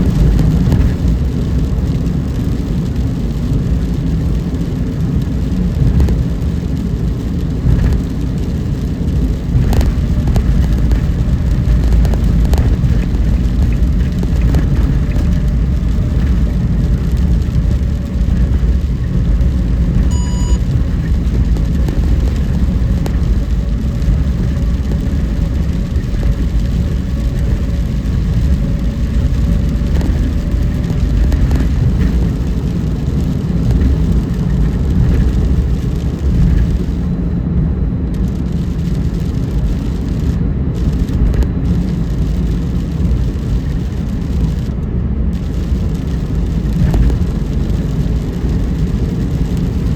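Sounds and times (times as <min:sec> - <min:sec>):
car driving on wet road: 0:00.0 - 0:49.9
short electronic beep: 0:20.1 - 0:20.7.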